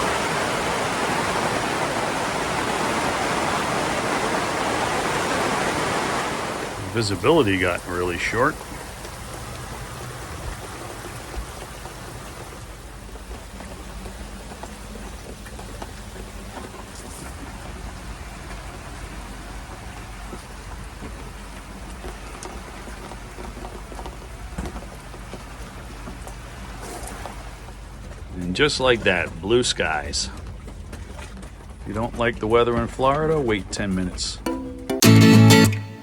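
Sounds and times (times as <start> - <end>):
heavy rain pouring: 0.0 - 30.4
low steady hum: 6.6 - 33.5
raindrop ticks: 6.8 - 34.7.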